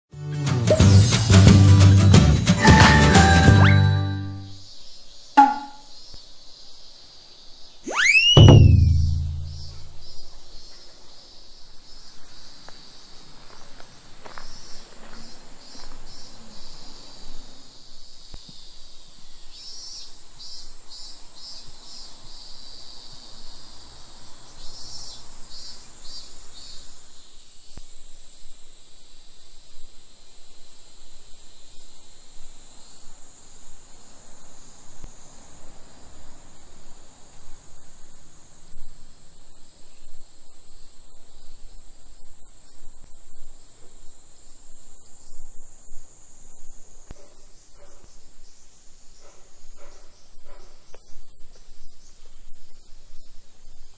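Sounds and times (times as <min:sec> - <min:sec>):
pulsing insect call: 0:02.7 - 0:10.2
cicadas droning: 0:04.2 - 0:53.9.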